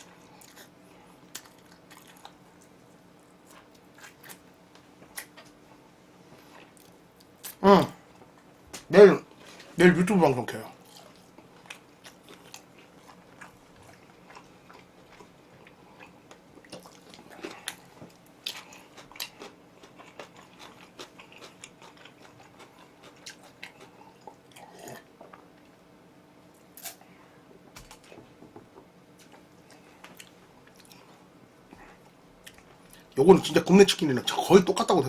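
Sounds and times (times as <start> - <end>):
person chewing and biting: 0.0 - 4.5, 10.8 - 25.4.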